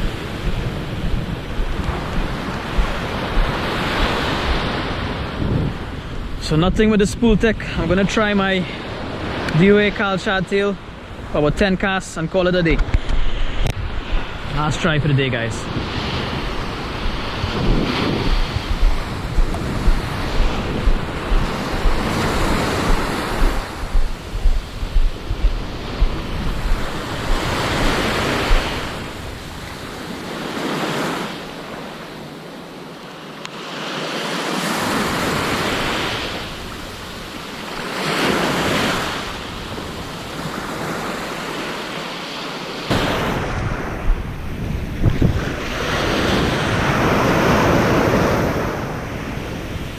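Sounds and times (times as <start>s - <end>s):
surf breaking on beach: 0.0s - 6.1s, 12.6s - 32.1s, 33.6s - 49.9s
wind buffeting microphone: 0.0s - 8.0s, 12.6s - 30.4s, 42.9s - 49.9s.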